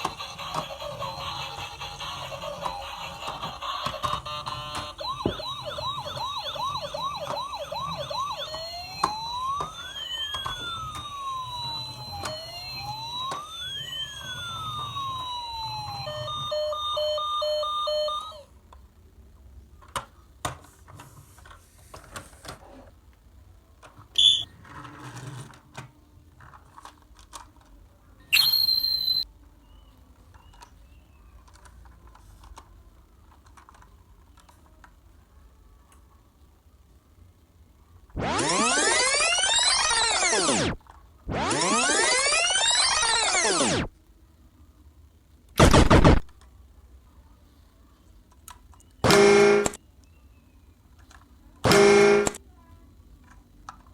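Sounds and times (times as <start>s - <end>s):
electronic toy siren: 0.0s - 18.5s, 24.2s - 24.5s, 28.3s - 29.3s, 38.2s - 43.9s, 49.0s - 49.8s, 51.7s - 52.4s
short high beeps: 24.2s - 24.5s, 28.4s - 29.2s.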